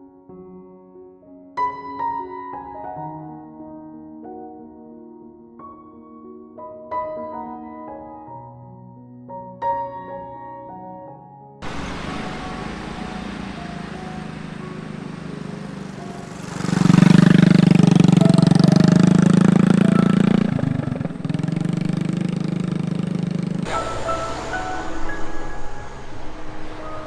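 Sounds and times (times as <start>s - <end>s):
small engine running: 11.6s - 27.0s.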